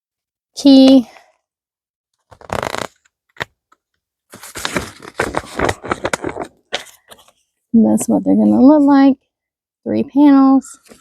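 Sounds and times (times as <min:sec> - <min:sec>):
packaging crinkling: 0:04.3 - 0:07.1
packaging rustling: 0:04.3 - 0:07.4.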